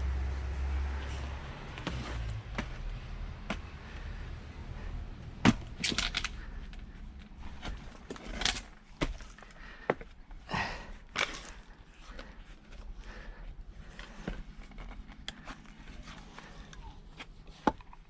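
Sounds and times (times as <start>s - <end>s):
axe cracking log: 5.4s - 6.5s.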